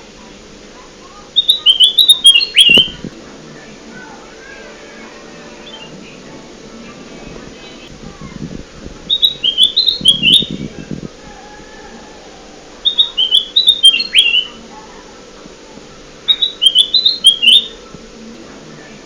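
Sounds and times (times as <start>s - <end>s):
bird chirping: 1.4s - 3.0s, 9.1s - 10.8s, 12.8s - 14.6s, 16.2s - 17.8s.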